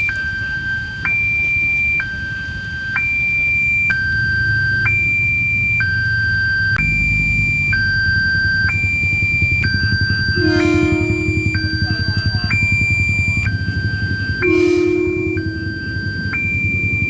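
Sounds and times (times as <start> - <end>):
two-tone level-crossing alarm: 0.0 - 17.0
low steady rumble: 3.8 - 17.0.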